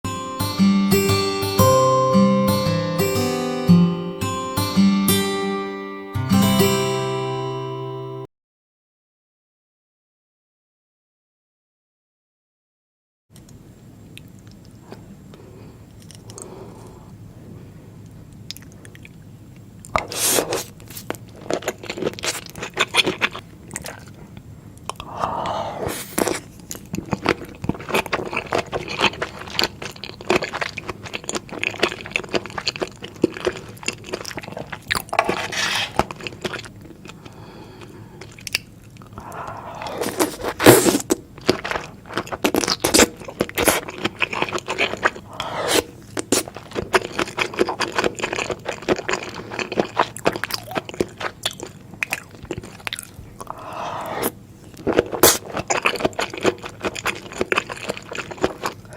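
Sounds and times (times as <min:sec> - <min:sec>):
crunching and wet chewing: 0:14.2 - 0:16.9, 0:18.0 - 0:58.9.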